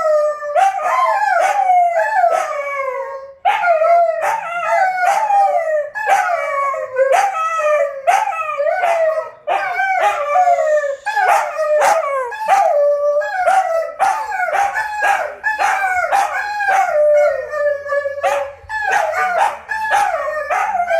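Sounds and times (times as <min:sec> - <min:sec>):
dogs howling and yipping: 0:00.0 - 0:20.9.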